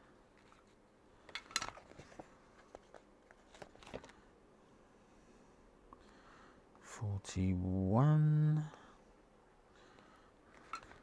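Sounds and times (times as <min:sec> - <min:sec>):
plastic pieces clicking and rustling: 0:01.3 - 0:02.1.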